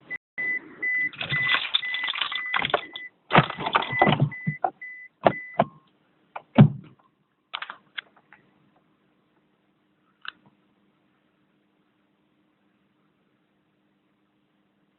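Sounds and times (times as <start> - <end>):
high warning beeps: 0.1 - 5.8.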